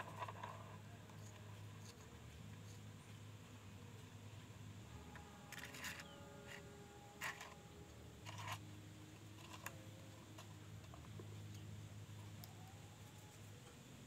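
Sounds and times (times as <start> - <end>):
low steady hum: 0.0 - 14.0
small metal parts clinking: 5.1 - 7.6, 8.2 - 8.6, 9.3 - 11.0.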